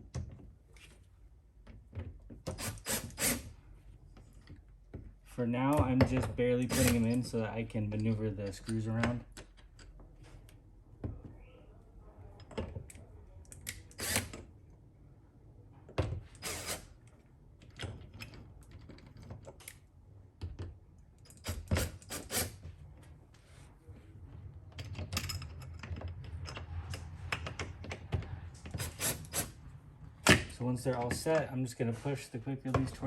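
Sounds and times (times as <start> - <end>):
clicks and knocks of hardware: 24.7 - 29.0.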